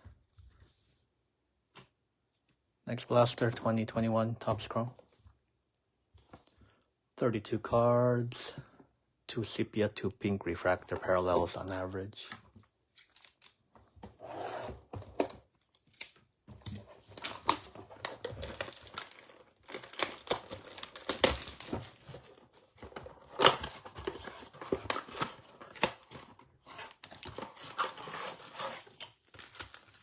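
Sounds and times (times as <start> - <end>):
plastic shrink wrap crinkling: 17.2 - 22.1.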